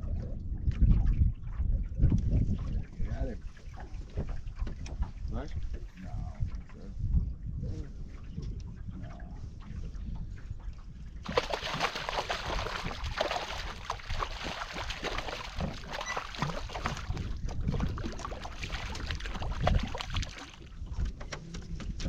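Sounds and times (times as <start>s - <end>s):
wind rumble on microphone: 0.0s - 22.0s
water splashing against boat hull: 9.0s - 22.0s.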